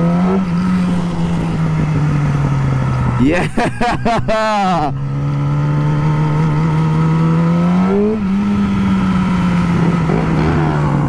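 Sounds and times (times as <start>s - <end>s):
motorcycle engine running: 0.0s - 11.0s
wind and road noise: 0.0s - 11.0s.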